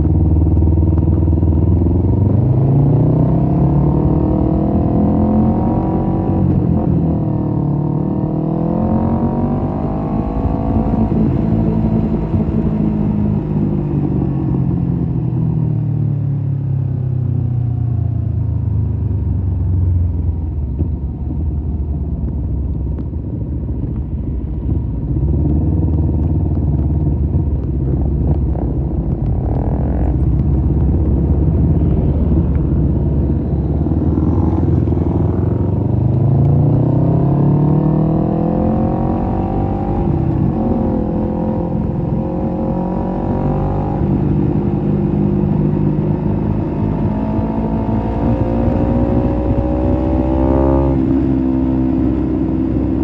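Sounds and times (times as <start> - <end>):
motorcycle engine: 19.6 - 53.0.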